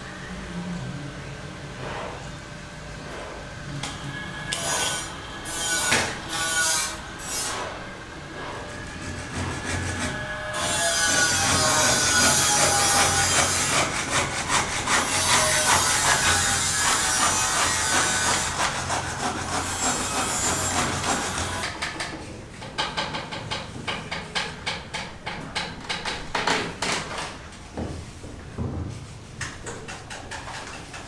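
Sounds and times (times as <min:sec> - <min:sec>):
wood being sawn: 0:08.6 - 0:21.6.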